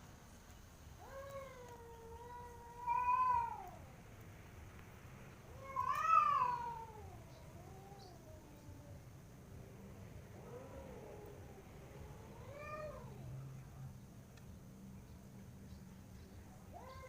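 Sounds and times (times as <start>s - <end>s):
cat yowling: 1.0s - 3.9s, 5.5s - 9.0s, 10.4s - 13.3s, 16.7s - 17.0s.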